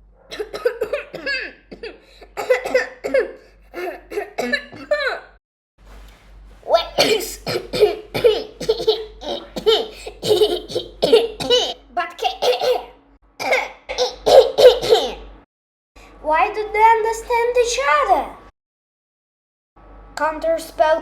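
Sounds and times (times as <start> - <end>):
person coughing cartoonishly: 0.3 - 5.3, 6.9 - 15.3.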